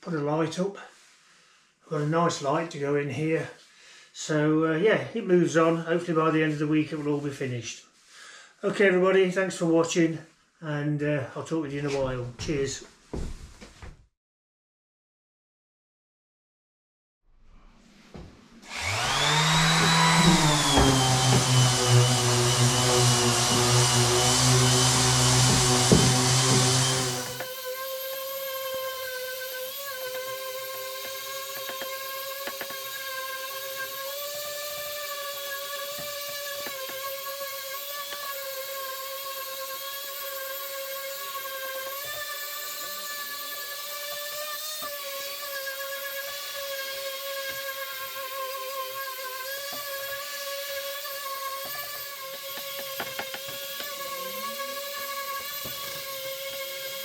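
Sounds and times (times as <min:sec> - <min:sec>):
electric motor whining: 0:18.7 - 0:38.2, 0:49.7 - 0:57.0.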